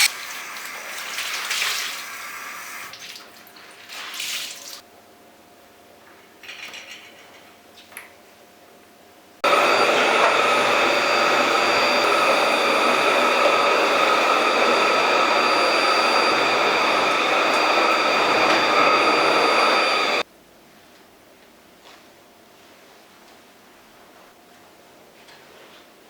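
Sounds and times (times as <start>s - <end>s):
appliance motor whirring: 9.4s - 20.2s.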